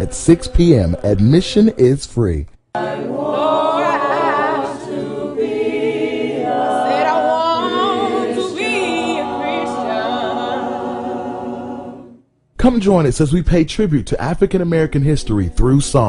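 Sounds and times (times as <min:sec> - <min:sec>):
choir singing sustained chords: 0:00.0 - 0:02.0, 0:02.7 - 0:12.3.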